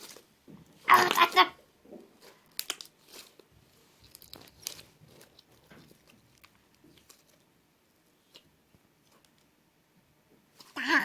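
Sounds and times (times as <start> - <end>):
slime crackling and popping: 2.2 - 7.5.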